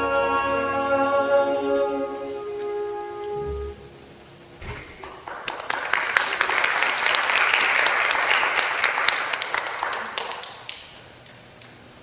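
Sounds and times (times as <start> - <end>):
audience clapping: 4.9 - 11.1.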